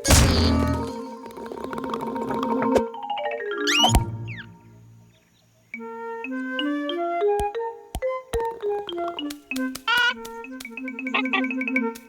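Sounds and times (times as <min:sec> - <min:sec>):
playful cartoon music: 0:02.2 - 0:05.0, 0:05.8 - 0:12.0.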